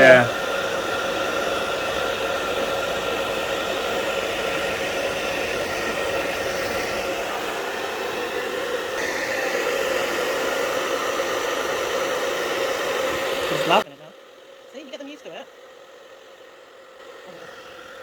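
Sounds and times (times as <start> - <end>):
hair dryer blowing: 0.0 - 18.0.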